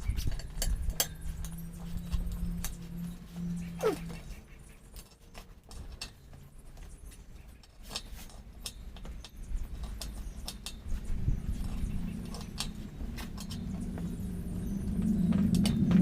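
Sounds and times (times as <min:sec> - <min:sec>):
low rumble: 0:11.0 - 0:16.0.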